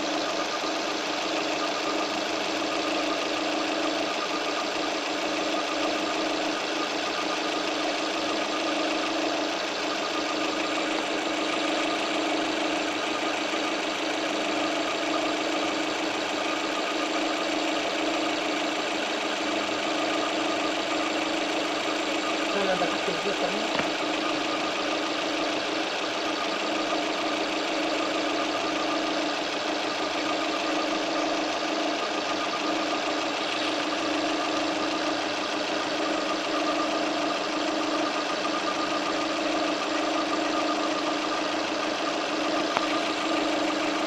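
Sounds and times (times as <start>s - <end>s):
rattling car engine idling: 0.0s - 44.0s.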